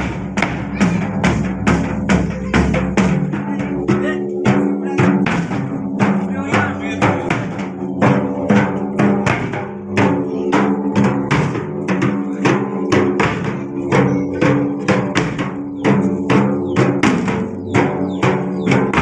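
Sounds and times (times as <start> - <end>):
dhol drums beating: 0.0 - 19.0
sustained tone: 2.2 - 15.1.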